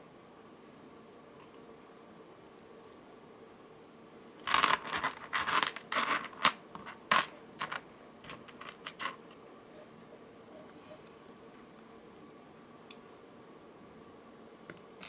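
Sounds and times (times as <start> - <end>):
beads clicking and rattling: 4.4 - 9.3.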